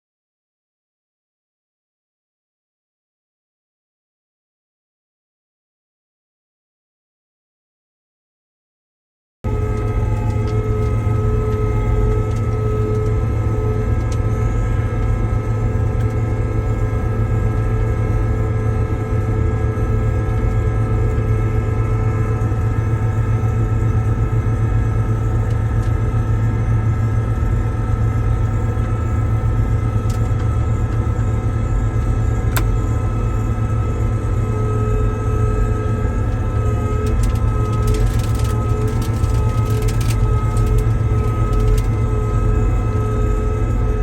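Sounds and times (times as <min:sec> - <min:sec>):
low engine hum: 0:09.5 - 0:44.0
machine drives whining: 0:09.5 - 0:44.0.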